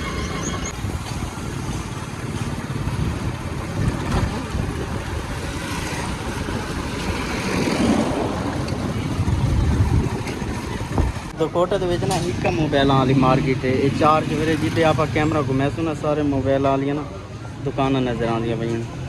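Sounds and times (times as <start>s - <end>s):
wind rushing over microphone: 0.7s - 11.4s.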